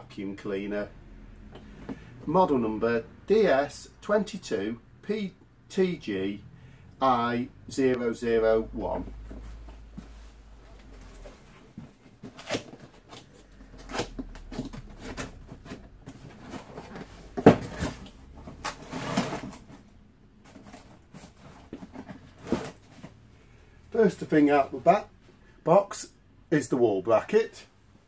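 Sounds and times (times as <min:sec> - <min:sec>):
cardboard packaging knocks and rustles: 0:14.1 - 0:19.7.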